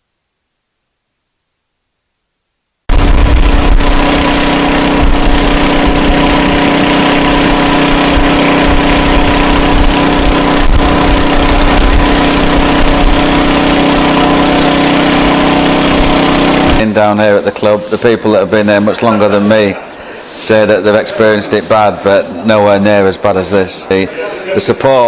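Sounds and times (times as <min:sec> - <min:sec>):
engine running steadily: 0:02.9 - 0:20.4.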